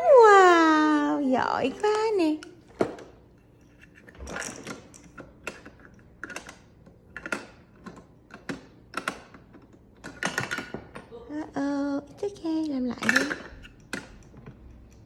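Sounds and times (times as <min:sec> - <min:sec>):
plastic toy blocks clicking: 0:03.8 - 0:11.0, 0:13.0 - 0:15.0.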